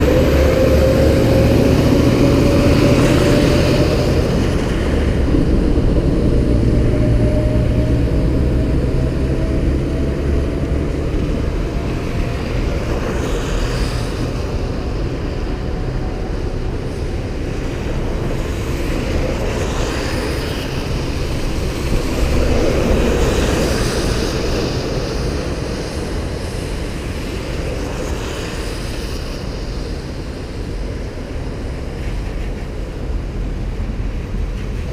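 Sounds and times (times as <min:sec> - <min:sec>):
engine tone rising in pitch: 0:00.0 - 0:11.8
road traffic noise: 0:00.0 - 0:34.9.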